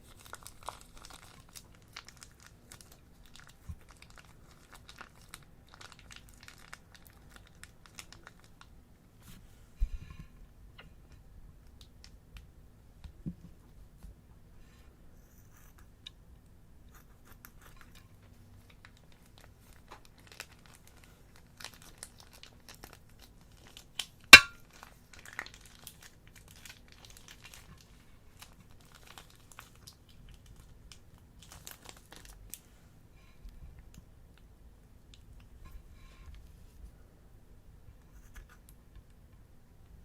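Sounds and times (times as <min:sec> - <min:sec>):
slime and plastic bags crinkling: 0:00.0 - 0:08.7, 0:18.6 - 0:32.7
sharp loud snap: 0:24.4 - 0:24.6.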